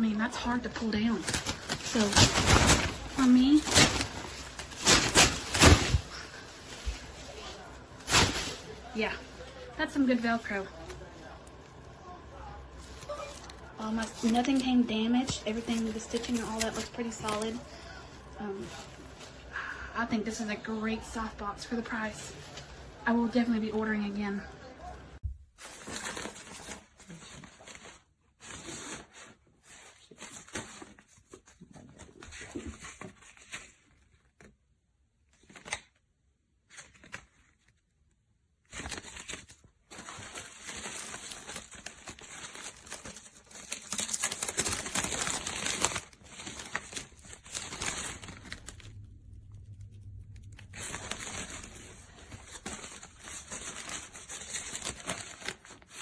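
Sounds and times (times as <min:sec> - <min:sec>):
fabric rustling and ripping: 0:00.2 - 0:11.6, 0:38.7 - 0:56.0.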